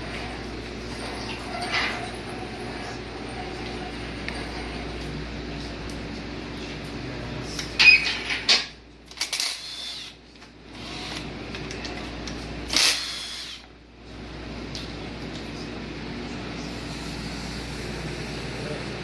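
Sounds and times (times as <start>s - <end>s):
steady shop hum: 0.0s - 19.0s
power tool whining: 9.3s - 11.3s, 12.7s - 13.7s.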